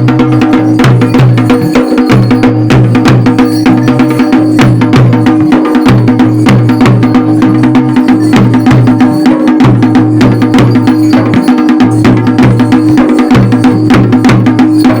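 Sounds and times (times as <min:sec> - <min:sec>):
fast dense percussion: 0:00.0 - 0:15.0.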